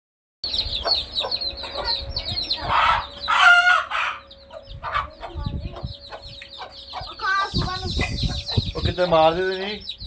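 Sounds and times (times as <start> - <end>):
chicks peeping: 0.5 - 10.0
adult chicken call: 2.7 - 4.2, 4.8 - 5.2.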